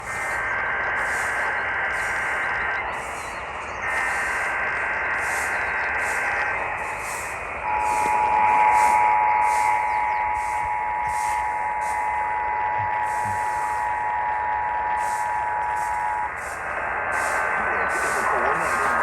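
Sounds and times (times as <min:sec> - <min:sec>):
digital data burst screech: 0:00.0 - 0:12.4, 0:13.0 - 0:19.0
radio hiss: 0:00.0 - 0:19.0
two-tone attention signal: 0:05.2 - 0:16.6.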